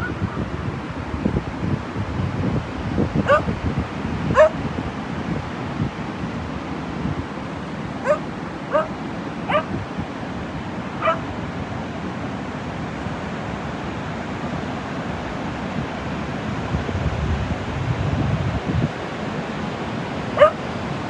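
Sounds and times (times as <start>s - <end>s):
dog yipping: 4.4s - 4.6s, 8.0s - 8.9s, 9.5s - 9.7s, 11.0s - 11.3s, 20.4s - 20.6s.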